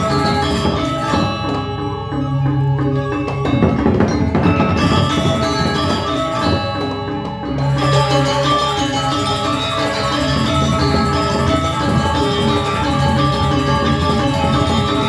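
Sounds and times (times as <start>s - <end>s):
clashing percussion: 0.0s - 15.0s
gamelan metallophones ringing: 0.0s - 15.0s.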